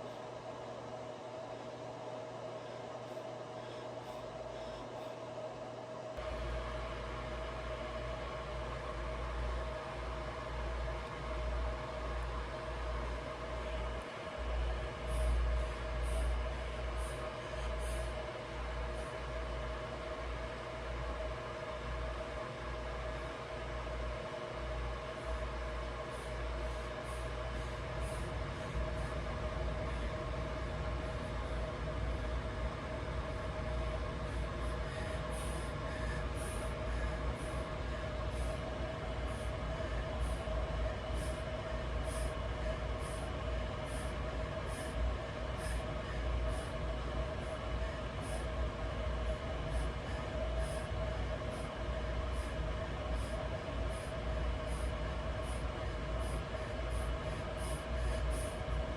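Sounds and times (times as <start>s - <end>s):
fan and heater hum: 0.0s - 58.9s
fast breathing: 2.3s - 5.6s, 6.2s - 58.9s.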